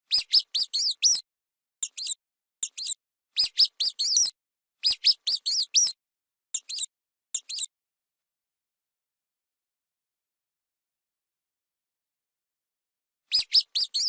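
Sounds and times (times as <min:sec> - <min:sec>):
rodent squeaking: 0:00.1 - 0:01.2, 0:01.8 - 0:06.0, 0:06.6 - 0:07.7, 0:13.3 - 0:14.0.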